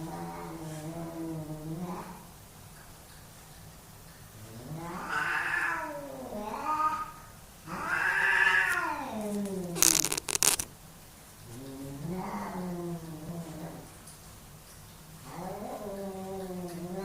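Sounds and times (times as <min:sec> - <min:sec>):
cats yowling: 0:04.7 - 0:10.6.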